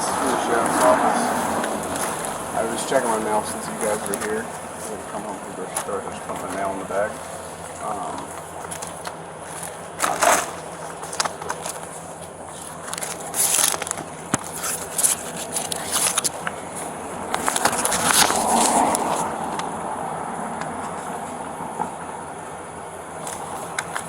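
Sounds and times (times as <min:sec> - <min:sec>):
rustling and crinkling handling: 0:00.2 - 0:19.7.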